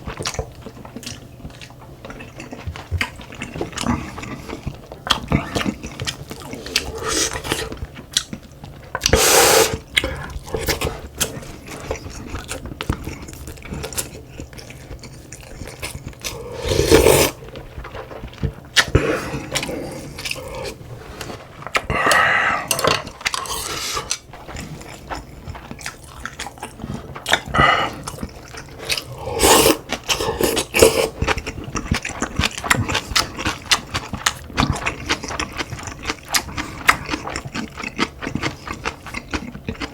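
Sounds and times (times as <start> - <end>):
person chewing: 0.0 - 39.9
slurping broth: 6.4 - 7.8, 9.0 - 9.8, 16.2 - 17.5, 18.8 - 24.9, 28.8 - 31.3.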